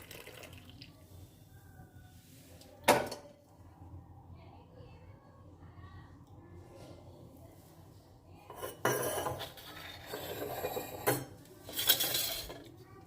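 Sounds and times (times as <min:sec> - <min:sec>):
pots and utensils clattering: 0:08.5 - 0:12.8.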